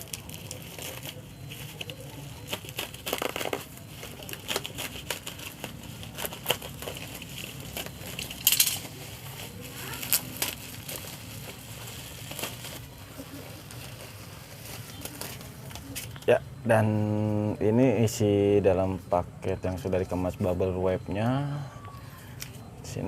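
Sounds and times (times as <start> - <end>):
bubble wrap crinkling: 0.0 - 16.3.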